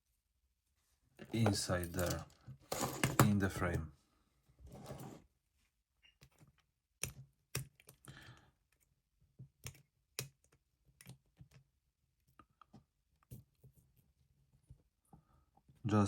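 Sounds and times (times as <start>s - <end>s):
small parts clicking and tapping: 1.4s - 3.4s.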